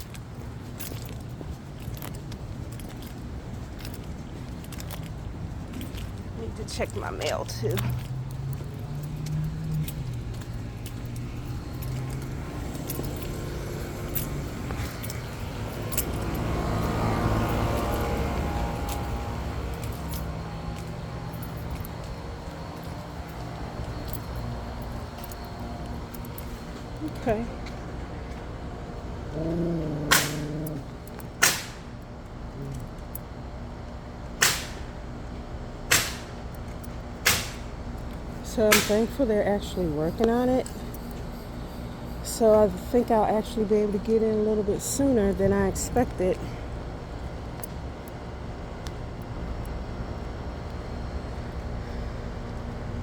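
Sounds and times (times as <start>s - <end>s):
keys jangling: 0.0s - 28.4s, 29.3s - 33.3s, 38.0s - 44.4s
steady low hum: 0.0s - 53.0s
pneumatic nail gun shots: 30.1s - 30.4s, 31.4s - 31.9s, 34.4s - 34.9s, 35.9s - 36.4s, 37.2s - 37.7s.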